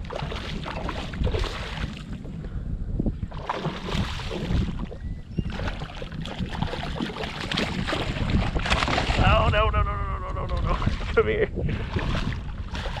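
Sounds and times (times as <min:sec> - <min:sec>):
water sloshing around kayak: 0:00.0 - 0:02.4, 0:03.2 - 0:09.6, 0:10.4 - 0:13.0
wind buffeting microphone: 0:00.0 - 0:13.0
small splashes and knocks: 0:03.3 - 0:09.3.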